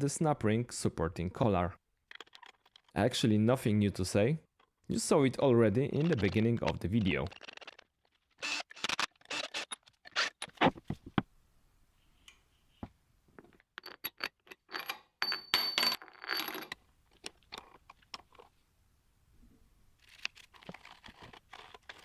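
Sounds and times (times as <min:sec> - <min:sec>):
steel parts clinking and scraping: 0:05.8 - 0:10.6, 0:13.4 - 0:18.5.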